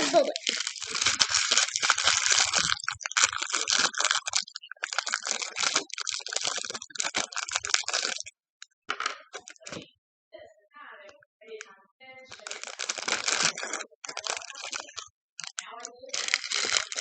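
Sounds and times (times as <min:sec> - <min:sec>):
plastic packaging crinkling: 0:00.0 - 0:08.3, 0:09.4 - 0:09.8, 0:12.3 - 0:17.0
small plastic pieces rattling: 0:00.0 - 0:08.3, 0:12.3 - 0:17.0.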